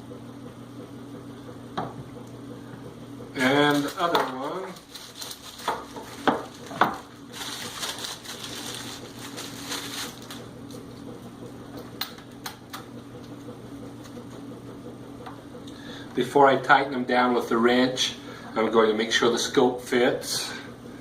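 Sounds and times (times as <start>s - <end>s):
steady low hum: 0.0s - 21.0s
rustling handling noise: 3.4s - 10.9s.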